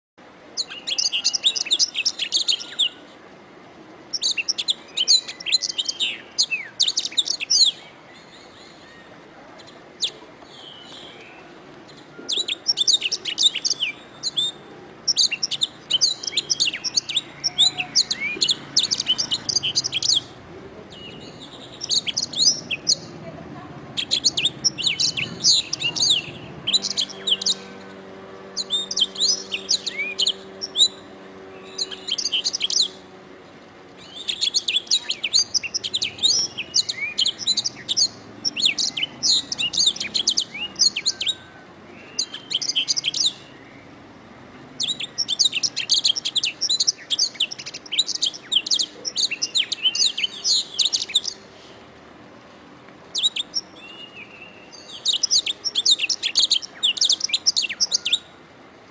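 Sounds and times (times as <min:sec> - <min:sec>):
canary singing trills: 0:00.6 - 0:03.2, 0:04.1 - 0:44.1, 0:44.7 - 0:51.7, 0:53.1 - 0:58.4.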